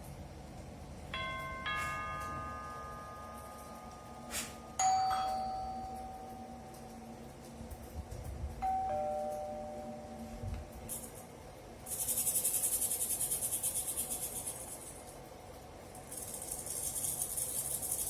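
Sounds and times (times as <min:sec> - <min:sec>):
doorbell ding-dong chimes: 0:01.2 - 0:07.2, 0:08.6 - 0:10.4.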